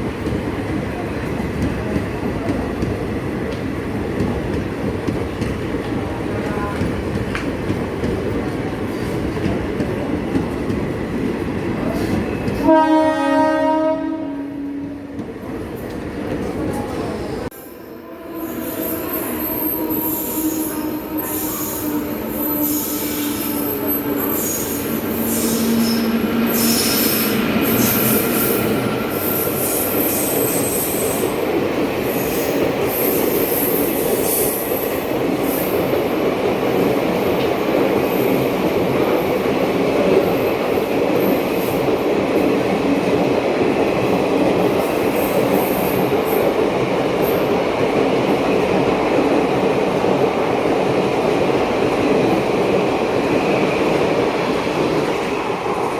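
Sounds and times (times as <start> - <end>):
train wheels rumbling: 0.0 - 55.9
train wheel squeal: 18.4 - 31.4, 32.0 - 35.8.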